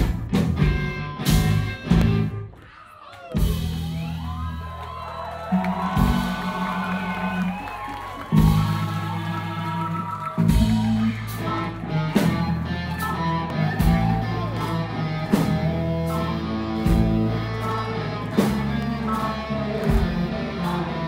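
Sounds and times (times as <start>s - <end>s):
bass guitar: 0.0s - 2.6s, 3.4s - 21.0s
drums: 0.0s - 21.0s
electric guitar: 5.7s - 21.0s.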